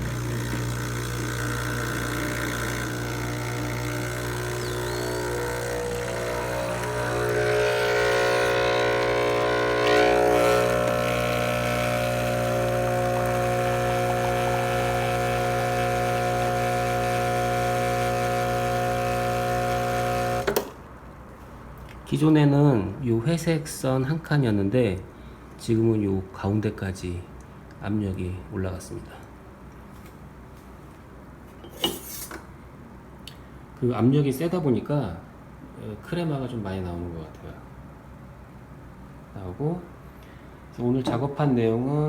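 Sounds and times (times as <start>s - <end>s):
espresso machine pump buzzing: 0.0s - 20.7s.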